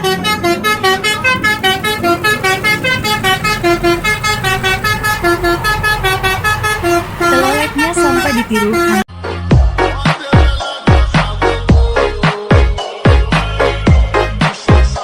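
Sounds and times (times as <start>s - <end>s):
multi-tone bus horn tune: 0.0s - 9.1s.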